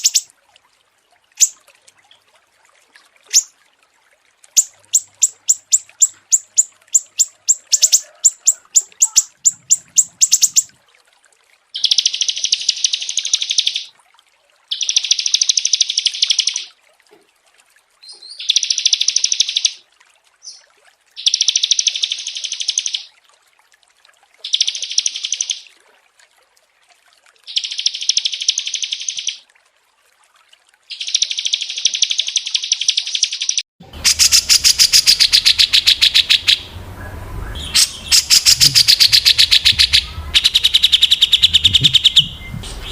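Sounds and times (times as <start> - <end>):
songbird singing: 0.0 - 0.3, 3.3 - 3.5, 4.5 - 10.7, 11.8 - 13.9, 30.9 - 42.9.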